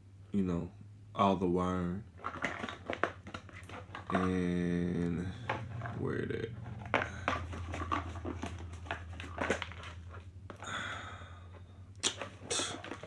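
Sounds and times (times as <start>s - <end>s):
packaging crinkling and rustling: 2.1s - 4.6s, 5.3s - 10.7s, 12.1s - 13.0s.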